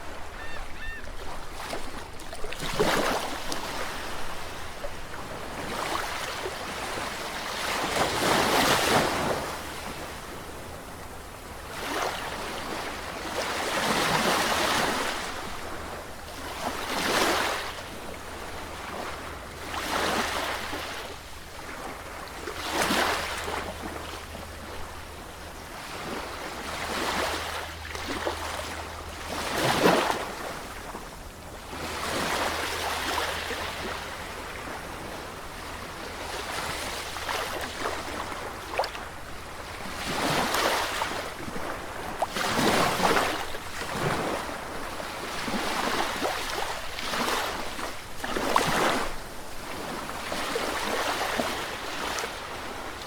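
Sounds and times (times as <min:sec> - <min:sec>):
sea waves breaking on shore: 0:00.0 - 0:53.0.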